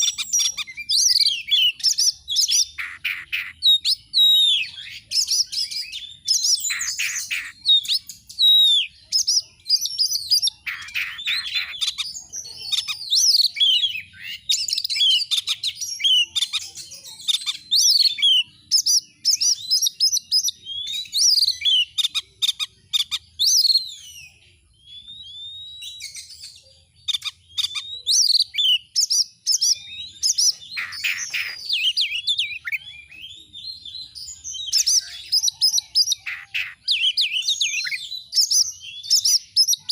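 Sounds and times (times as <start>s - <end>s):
harsh rasping bird calls: 0.0s - 24.1s, 27.1s - 39.9s
magpie-robin singing: 0.0s - 39.9s.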